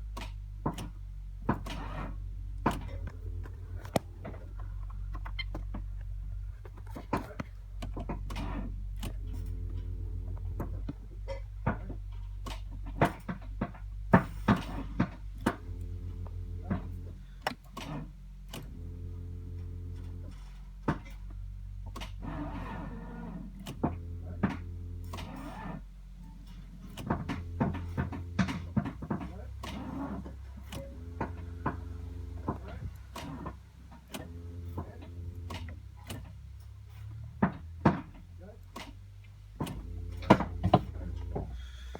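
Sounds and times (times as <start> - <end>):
scattered knocks and clicks: 0.0 - 41.6
steady low hum: 0.0 - 41.9.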